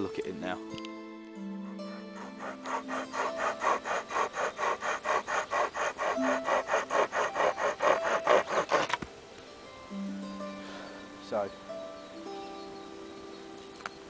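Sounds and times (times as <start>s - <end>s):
chain saw sawing log: 1.8s - 9.1s.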